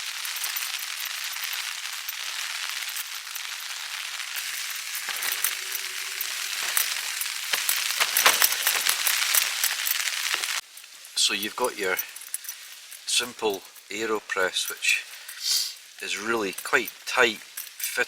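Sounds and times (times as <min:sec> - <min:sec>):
food sizzling in a frying pan: 0:00.0 - 0:18.0.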